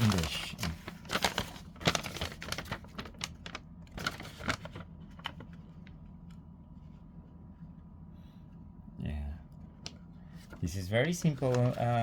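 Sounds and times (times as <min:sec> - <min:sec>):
paper crackling and rustling: 0:00.0 - 0:07.0, 0:09.8 - 0:12.0.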